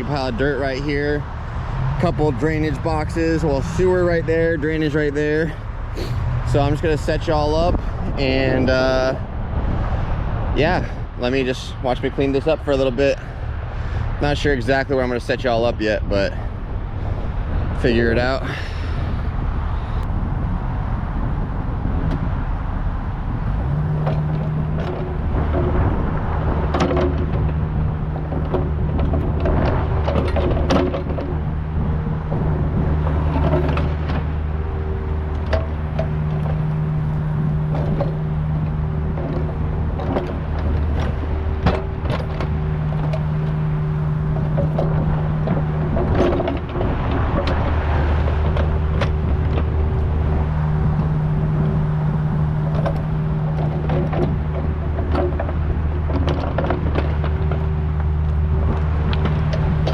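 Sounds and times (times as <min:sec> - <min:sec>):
excavator diesel engine running: 0:23.2 - 0:59.9.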